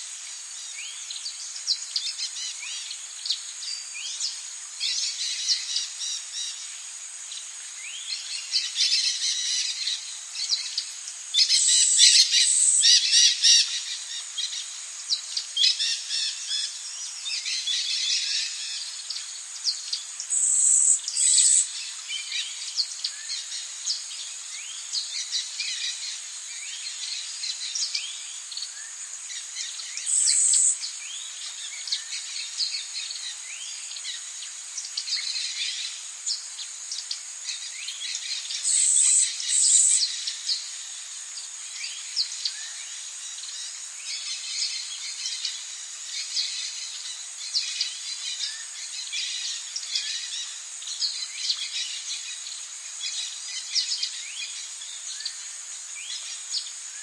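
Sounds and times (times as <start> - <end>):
tropical birds calling and chirping: 0.0 - 57.0
high-pitched insect drone: 15.6 - 22.9, 28.5 - 31.5, 32.1 - 57.0.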